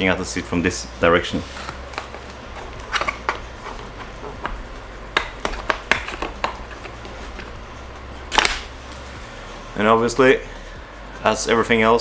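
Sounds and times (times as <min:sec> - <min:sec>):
plastic parts clicking and tapping: 0:01.6 - 0:07.7.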